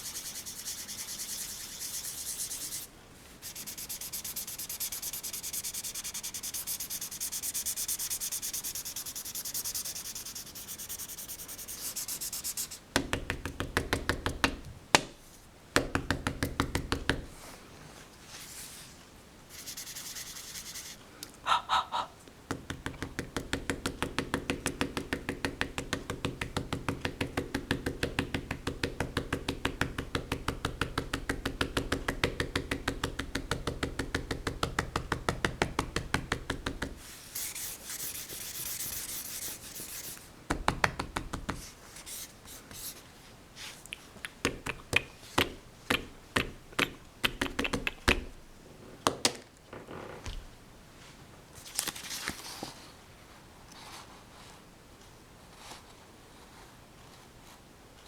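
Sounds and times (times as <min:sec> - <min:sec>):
pencil scratching on paper: 0:00.0 - 0:12.8, 0:19.5 - 0:21.0, 0:37.4 - 0:40.2
pencil taps: 0:22.5 - 0:37.0.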